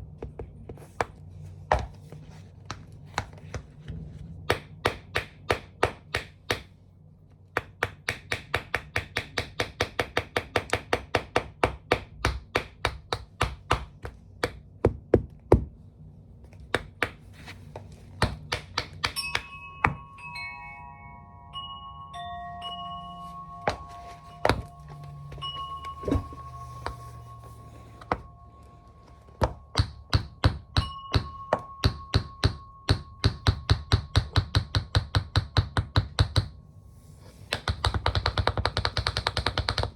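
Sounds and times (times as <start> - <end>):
held chime-like notes: 19.2 - 34.5
tap shoes tapping on hard floor: 37.6 - 39.9.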